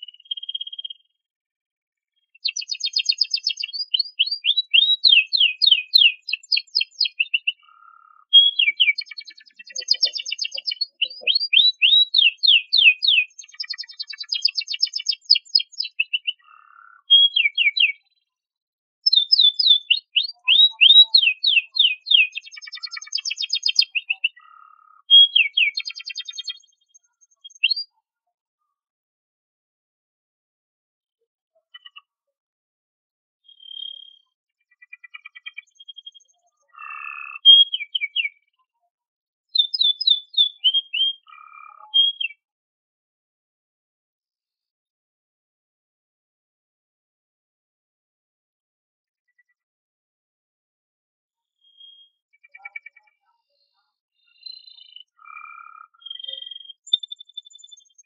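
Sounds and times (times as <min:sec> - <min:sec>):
canary chirping and trilling: 0:00.0 - 0:01.1, 0:02.3 - 0:18.2, 0:19.0 - 0:28.0, 0:33.5 - 0:38.4, 0:39.5 - 0:42.4, 0:54.4 - 0:58.0.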